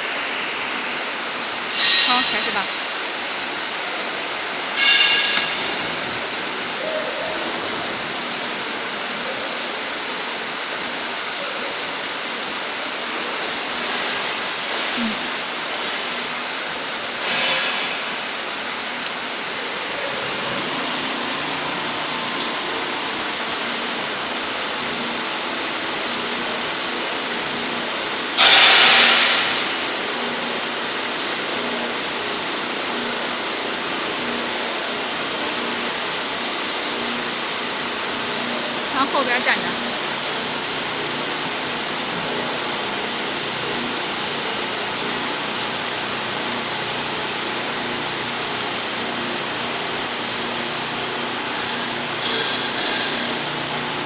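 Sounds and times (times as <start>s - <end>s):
workshop rushing noise: 1.7s - 32.3s
burst of hissing: 28.4s - 29.8s.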